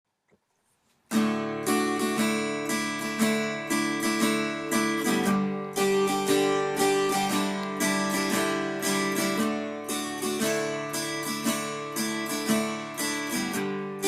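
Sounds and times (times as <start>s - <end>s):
acoustic guitar strumming chords: 1.1s - 14.0s.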